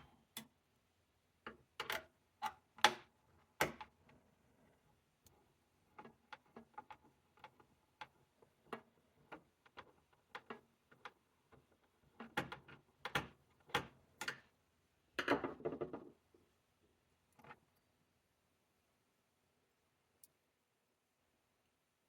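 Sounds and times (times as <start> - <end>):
computer parts clicking and tapping: 6.0 - 14.5.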